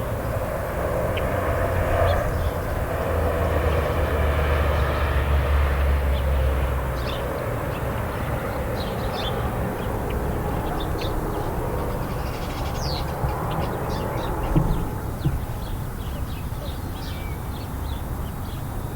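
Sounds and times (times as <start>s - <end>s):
distant traffic noise: 0.0s - 18.9s
vehicle low rumble: 0.0s - 18.9s
small birds chirping: 6.1s - 18.9s.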